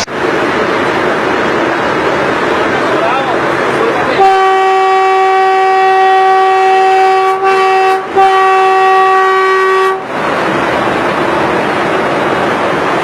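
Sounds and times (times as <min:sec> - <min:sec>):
steady rushing noise: 0:00.0 - 0:04.4, 0:09.9 - 0:13.0
train horn: 0:04.1 - 0:10.1.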